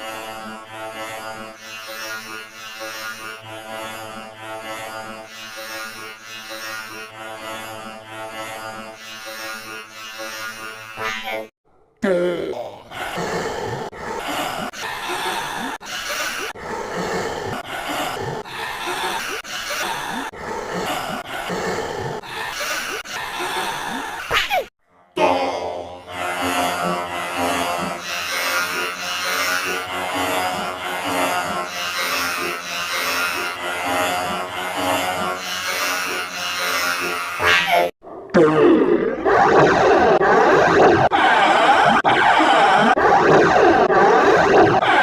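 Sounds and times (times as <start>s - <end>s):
distorted buzzing drone: 0.0s - 11.5s, 12.8s - 24.2s, 25.5s - 45.0s
cartoon character laughing: 14.2s - 16.5s, 17.7s - 21.2s, 22.4s - 24.7s.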